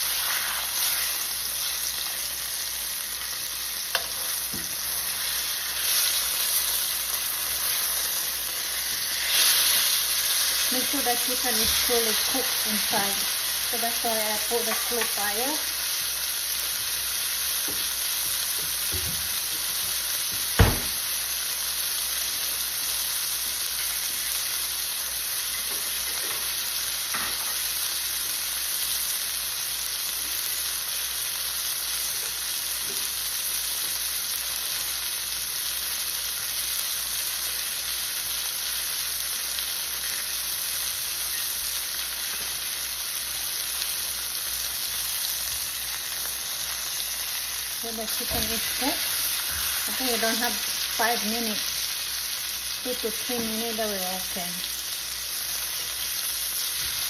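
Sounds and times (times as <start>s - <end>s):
chicken sizzling in a pan: 0.0s - 57.0s
sharp knock: 20.6s - 21.0s.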